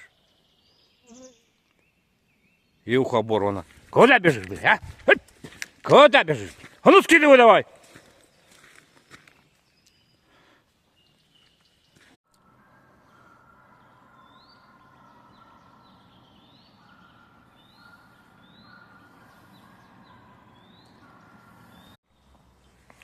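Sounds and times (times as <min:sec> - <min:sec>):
faint bird chirps: 0:00.0 - 0:02.9, 0:09.5 - 0:22.8
outdoor background noise: 0:00.0 - 0:23.0.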